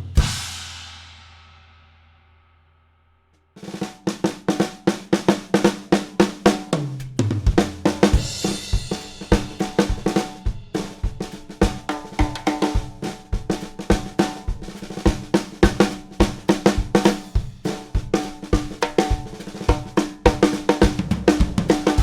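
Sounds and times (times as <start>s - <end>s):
bass drum and hi-hat: 0.0s - 0.5s, 6.8s - 13.0s
snare drum strokes: 3.6s - 22.0s
tom fill: 3.6s - 22.0s.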